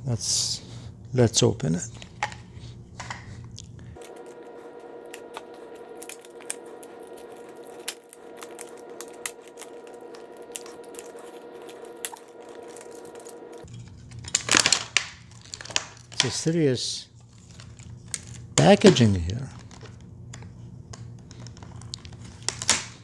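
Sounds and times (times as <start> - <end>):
steady multi-pitched hum: 0.0 - 14.6
packaging clicks and crinkles: 4.0 - 16.5, 17.2 - 23.0.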